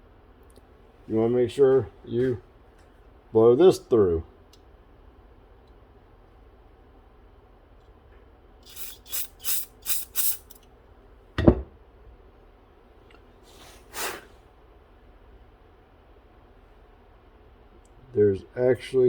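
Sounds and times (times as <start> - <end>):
air hissing through a jet: 8.7 - 10.6, 13.4 - 14.4.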